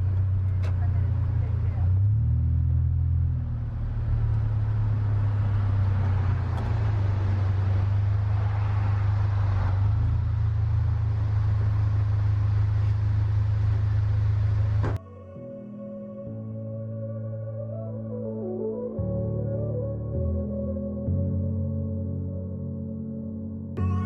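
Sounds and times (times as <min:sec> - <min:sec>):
car engine droning: 0:00.0 - 0:18.9.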